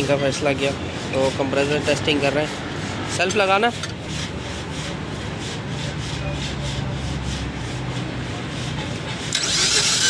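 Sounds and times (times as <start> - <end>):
engine cranking on starter: 9.3 - 10.0.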